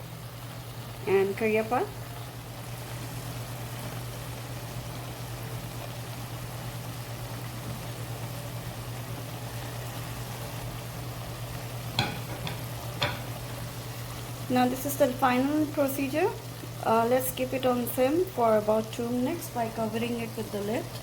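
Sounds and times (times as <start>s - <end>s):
curry bubbling in a pan: 0.0s - 21.0s.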